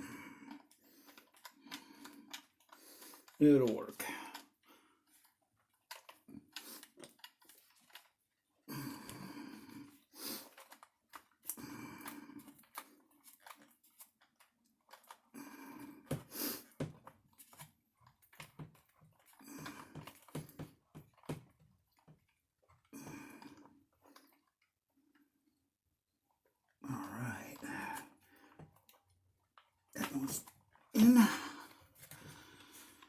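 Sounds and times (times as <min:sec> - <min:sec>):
person making low vocal sounds: 0:31.0 - 0:31.7.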